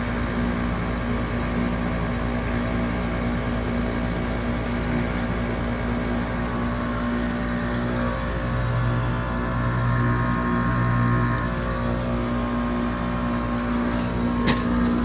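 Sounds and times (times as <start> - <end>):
heat pump compressor hum: 0.0 - 15.0.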